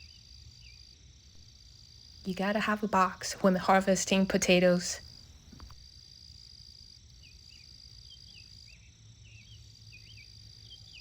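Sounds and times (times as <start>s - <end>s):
high-pitched insect trill: 0.0s - 3.0s, 5.0s - 11.0s.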